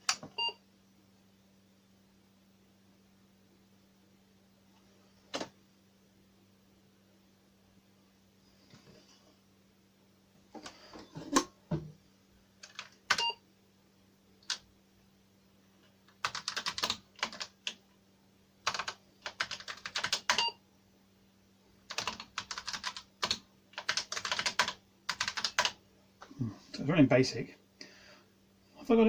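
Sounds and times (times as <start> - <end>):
faint low hum: 0.0 - 29.0
typing on keyboard: 12.6 - 13.3, 16.1 - 17.8, 18.6 - 20.5, 21.9 - 25.8.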